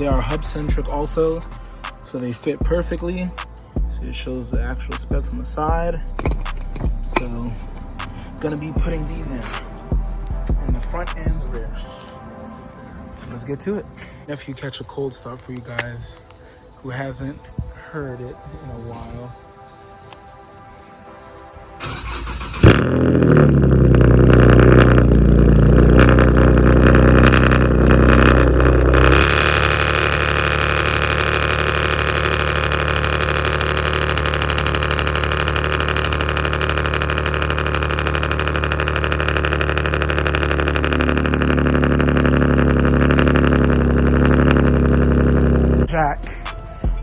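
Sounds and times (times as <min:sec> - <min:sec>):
car engine starting and idling: 0:00.0 - 0:11.9, 0:21.5 - 0:47.0.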